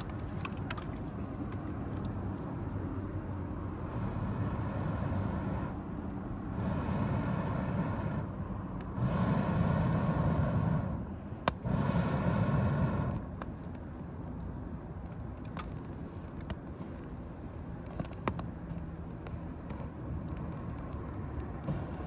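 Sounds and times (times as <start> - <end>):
loud rumbling noise: 3.6 - 13.7
campfire crackling and popping: 3.8 - 22.0.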